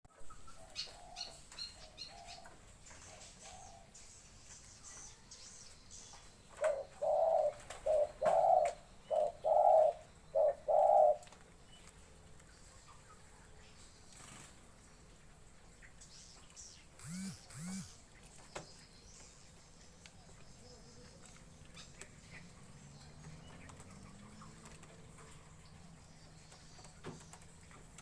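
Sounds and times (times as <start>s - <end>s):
dove cooing: 0.3s - 3.9s, 6.6s - 11.4s
high bird chirps: 16.6s - 18.0s.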